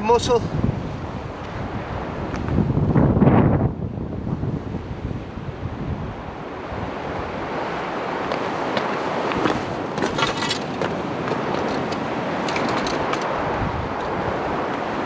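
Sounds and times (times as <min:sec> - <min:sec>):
strong wind: 0:00.0 - 0:15.0
sharp clicks and rattles: 0:10.0 - 0:13.4.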